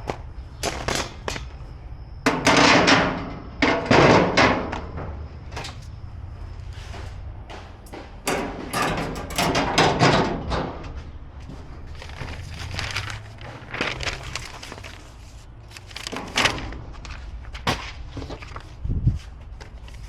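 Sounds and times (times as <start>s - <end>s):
grill parts knocking and clattering: 2.2s - 6.0s, 7.5s - 14.8s.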